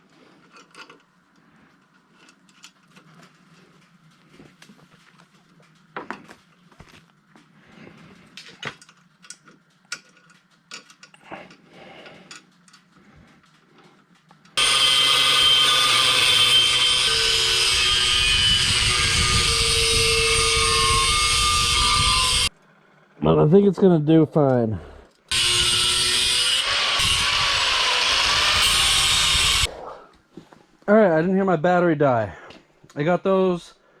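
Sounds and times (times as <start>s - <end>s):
metal parts clicking and tapping: 8.4s - 12.9s
power tool running: 14.6s - 22.5s, 25.3s - 29.7s.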